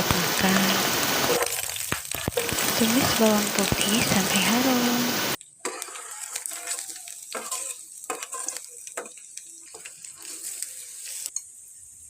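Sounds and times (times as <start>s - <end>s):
garlic sizzling in oil: 0.0s - 12.0s
utensil scraping a pan: 5.7s - 11.3s.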